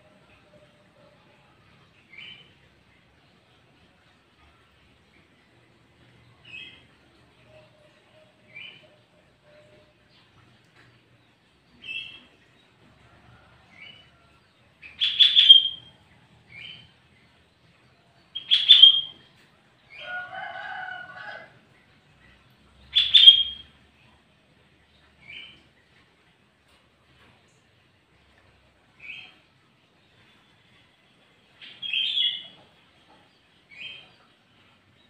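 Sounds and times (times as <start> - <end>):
bird chirping: 14.8 - 17.4, 18.3 - 19.2, 22.8 - 23.7, 31.6 - 35.0
loud sharp bird calls: 15.0 - 15.9, 18.4 - 19.1, 22.9 - 23.6.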